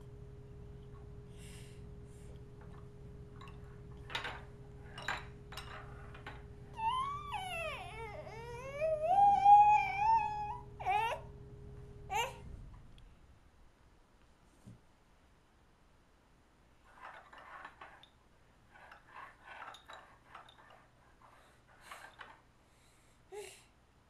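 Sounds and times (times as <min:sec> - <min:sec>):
faint electrical hum: 0:00.0 - 0:24.0
baby vocalising: 0:06.8 - 0:11.3.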